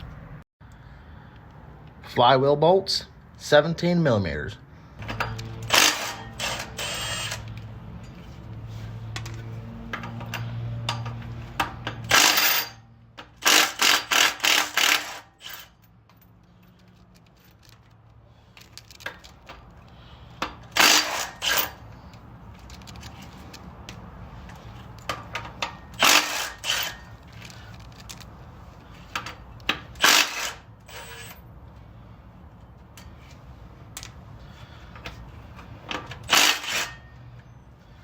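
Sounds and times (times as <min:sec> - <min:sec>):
impact wrench rattling bursts: 0:05.0 - 0:07.6, 0:09.4 - 0:15.9, 0:20.4 - 0:23.6, 0:24.5 - 0:28.2, 0:28.9 - 0:31.5, 0:35.5 - 0:37.3.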